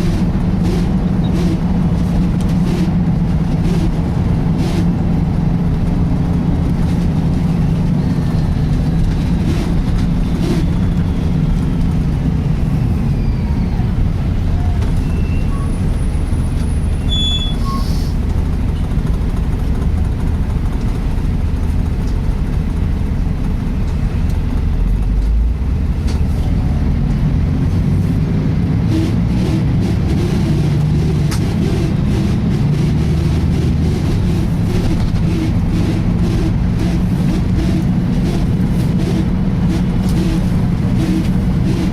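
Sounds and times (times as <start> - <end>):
bus drivetrain drone: 0.0 - 41.9
sweeping gearbox noise: 28.9 - 41.9.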